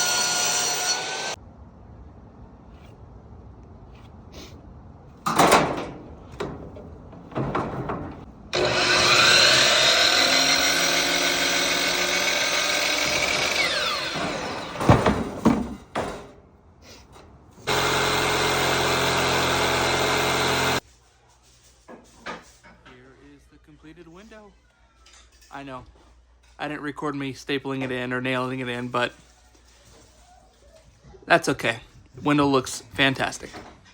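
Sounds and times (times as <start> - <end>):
electric power saw cutting wood: 0.0 - 1.4, 8.5 - 14.8, 17.6 - 20.8.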